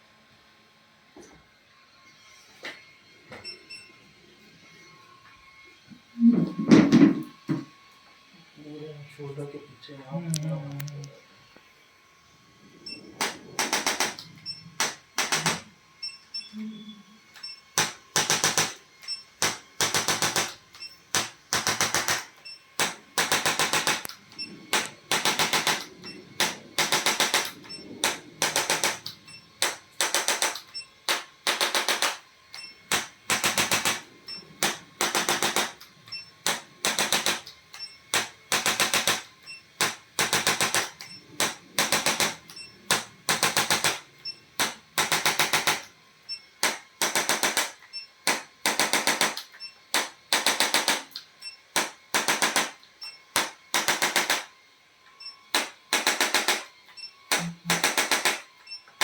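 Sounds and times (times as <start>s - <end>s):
rapid buzzing taps: 13.2s - 15.7s, 17.3s - 46.0s, 46.6s - 54.5s, 55.5s - 58.8s.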